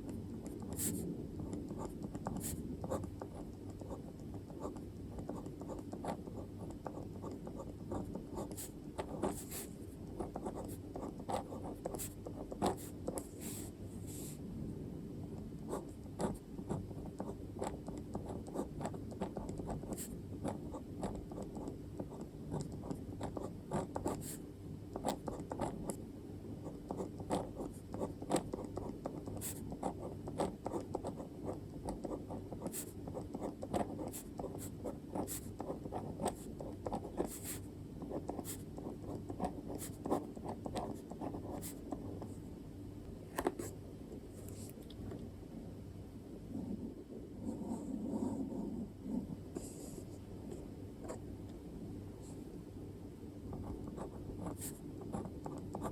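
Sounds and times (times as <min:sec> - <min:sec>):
pen scratching on paper: 0:00.4 - 0:14.4, 0:15.6 - 0:26.0, 0:26.6 - 0:42.4, 0:47.4 - 0:51.2, 0:53.5 - 0:55.9.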